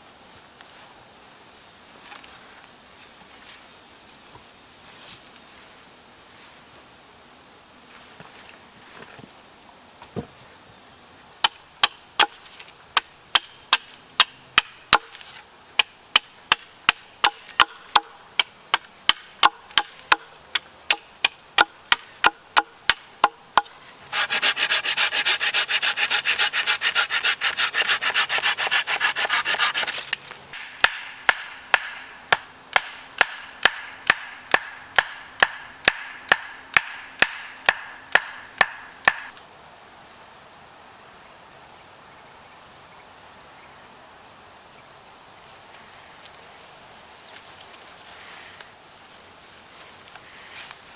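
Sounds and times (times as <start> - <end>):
blade chopping wood: 13.0 - 39.3
rasping sawing: 24.0 - 30.2.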